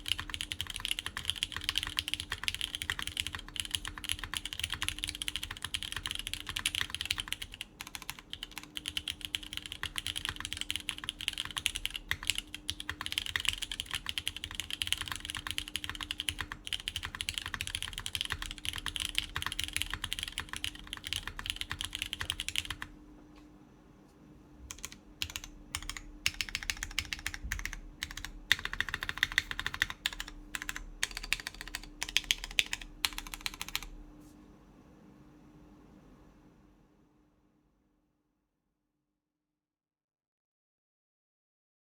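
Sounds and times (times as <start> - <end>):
typing on mechanical keyboard: 0.0 - 22.9, 24.7 - 34.0.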